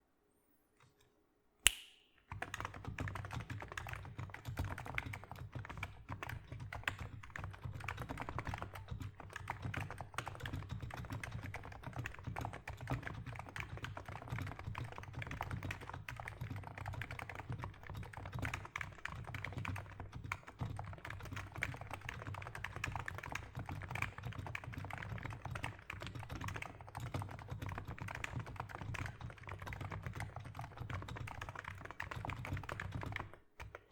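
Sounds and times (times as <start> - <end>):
sharp click: 1.7 - 2.2
fast keyboard typing: 2.3 - 33.9.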